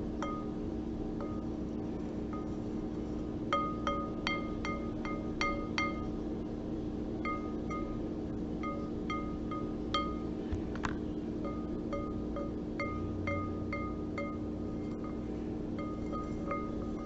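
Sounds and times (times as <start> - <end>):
steady low hum: 0.0 - 17.0
small bell striking: 3.5 - 6.1, 7.2 - 8.0, 8.6 - 10.3, 11.4 - 15.2, 15.8 - 17.0.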